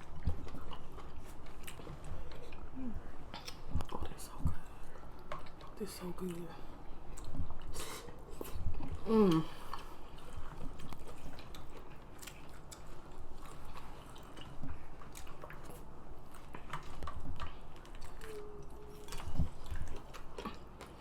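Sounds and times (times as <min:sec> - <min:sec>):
wet chewing and lip smacking: 0:00.0 - 0:21.0
person humming: 0:09.0 - 0:09.6.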